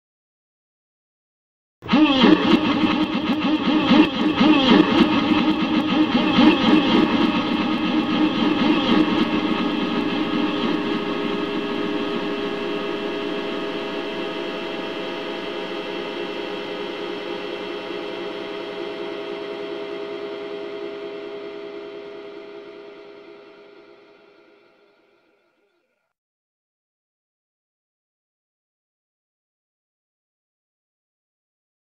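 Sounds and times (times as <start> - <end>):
dense buzzing keyboard chord: 2.0 - 25.2.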